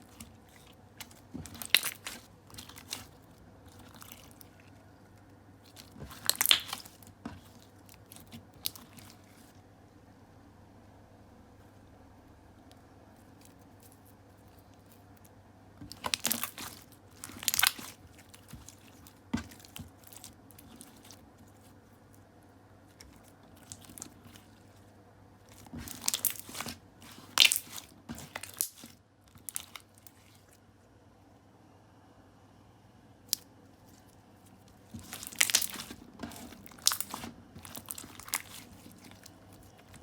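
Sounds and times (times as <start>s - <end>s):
slime crackling and popping: 0.0s - 4.5s, 5.7s - 9.5s, 15.8s - 21.7s, 22.9s - 24.6s, 25.5s - 30.3s, 34.9s - 40.0s.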